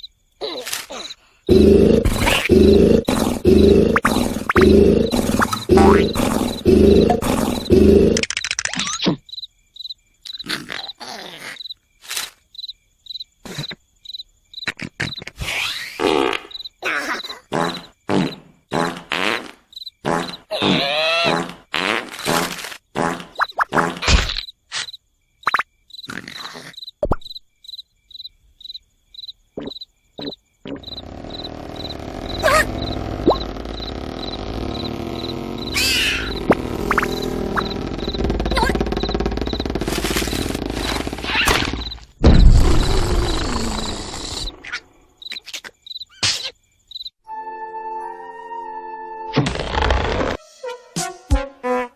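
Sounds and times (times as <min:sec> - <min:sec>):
cricket chirping: 0:00.0 - 0:21.5, 0:22.2 - 0:47.2
soft snoring: 0:01.5 - 0:08.2
thumps: 0:01.5 - 0:08.2, 0:30.7 - 0:43.1
low rumbling noise: 0:31.0 - 0:41.3.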